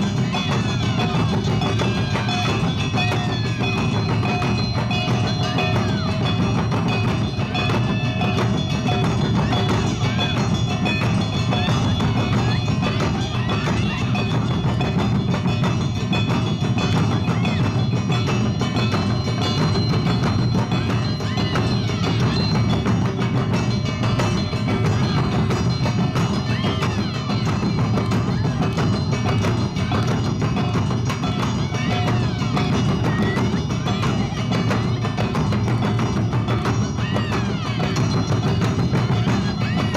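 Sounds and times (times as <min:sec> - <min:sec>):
drums: 0:00.0 - 0:39.9
metallic gong-like percussion: 0:00.0 - 0:39.9.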